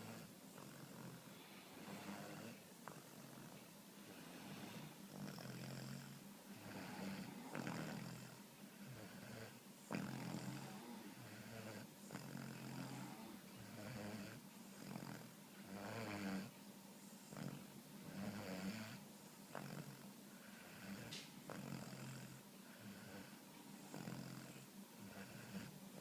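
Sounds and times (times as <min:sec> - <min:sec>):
puppy snoring: 0:00.0 - 0:26.0.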